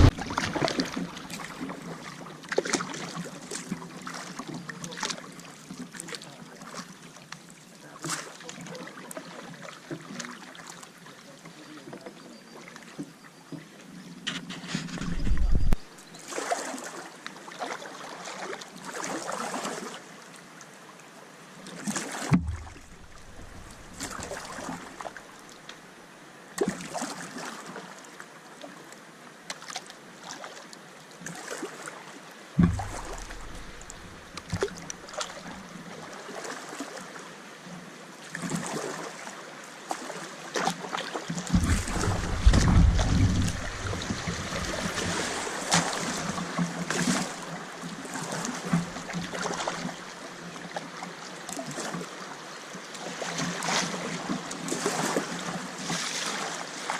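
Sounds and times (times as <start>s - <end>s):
river flowing: 0.0s - 2.7s, 22.0s - 26.5s, 31.4s - 37.5s, 41.0s - 50.3s
paddle splashing in water: 0.0s - 6.9s, 14.3s - 20.0s, 21.7s - 25.6s, 32.6s - 37.0s, 39.9s - 52.2s, 53.0s - 56.9s
low rumbles: 15.0s - 15.8s, 22.4s - 24.3s, 32.6s - 34.9s, 41.6s - 44.8s.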